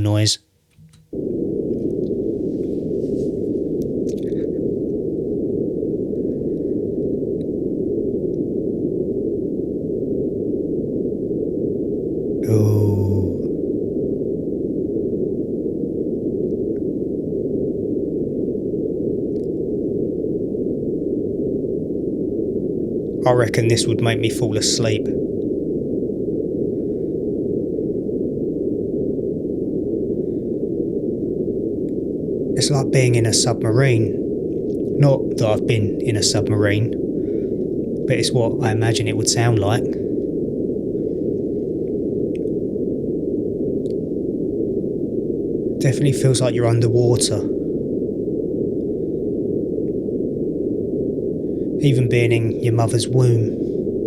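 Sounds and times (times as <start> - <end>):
deep muffled rushing noise: 0.0 - 5.4.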